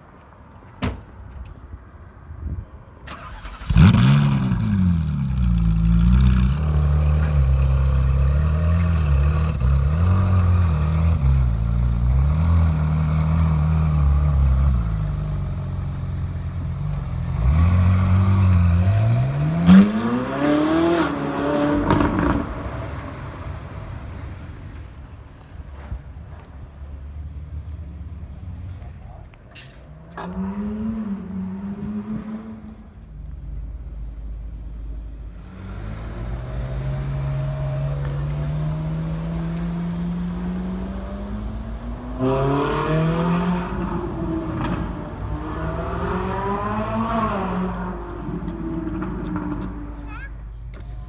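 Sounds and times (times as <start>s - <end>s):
car engine starting and idling: 3.0s - 51.0s
engine revving: 3.1s - 25.0s, 35.4s - 50.1s.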